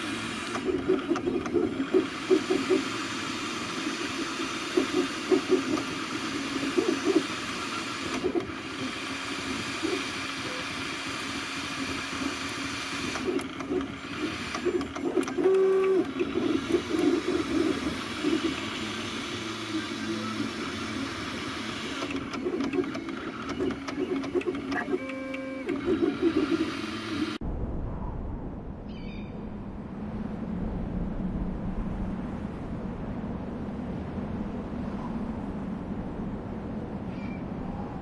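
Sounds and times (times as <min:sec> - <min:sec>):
stepper motors whirring: 0:00.0 - 0:27.4.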